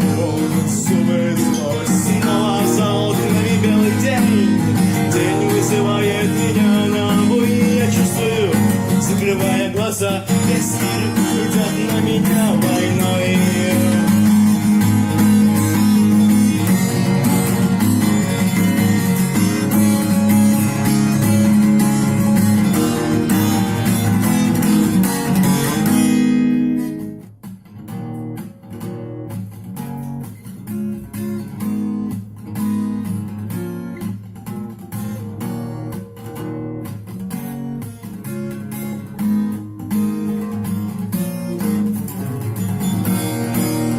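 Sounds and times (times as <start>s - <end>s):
acoustic guitar strumming: 0.0s - 43.9s.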